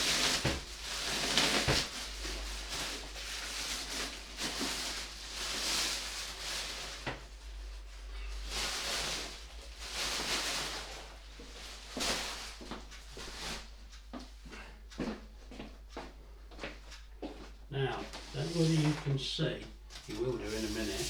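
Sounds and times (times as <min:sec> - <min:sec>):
packing material rustling: 0:00.0 - 0:13.7, 0:20.0 - 0:21.0.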